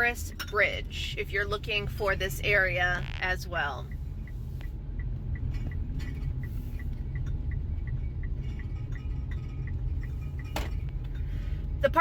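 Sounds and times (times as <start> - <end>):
engine and road rumble in car: 0.0 - 12.0
turn signal ticking: 0.0 - 12.0.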